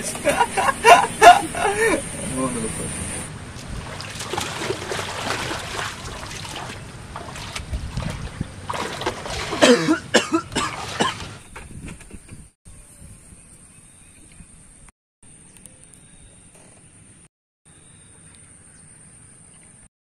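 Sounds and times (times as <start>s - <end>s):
background hiss: 0.0s - 3.3s
person coughing: 9.5s - 11.2s.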